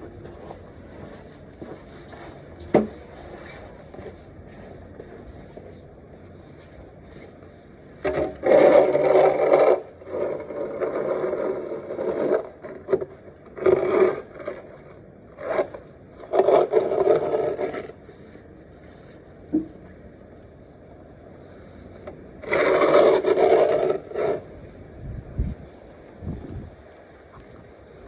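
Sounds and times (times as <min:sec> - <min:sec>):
snow scraping: 0:22.4 - 0:28.0.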